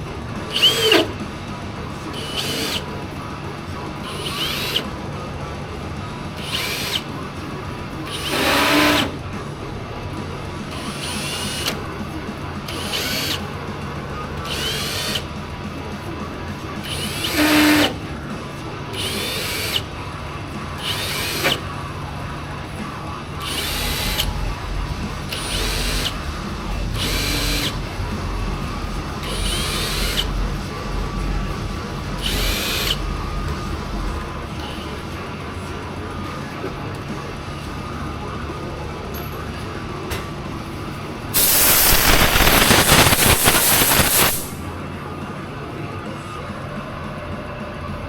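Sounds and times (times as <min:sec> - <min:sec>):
power drill boring sheet metal: 0:00.0 - 0:35.4, 0:41.3 - 0:44.7
background music: 0:00.0 - 0:42.0.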